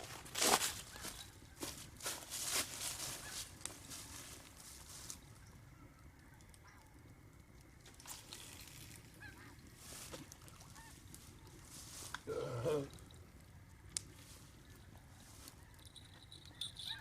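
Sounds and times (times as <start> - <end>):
faint goose honks: 9.2 - 9.6, 10.7 - 11.0.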